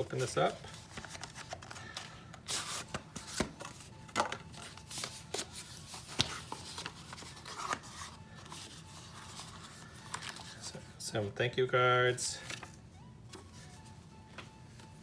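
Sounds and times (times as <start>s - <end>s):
packaging rustling: 0.0s - 10.8s, 12.4s - 15.0s
packaging clicks and taps: 0.4s - 10.7s.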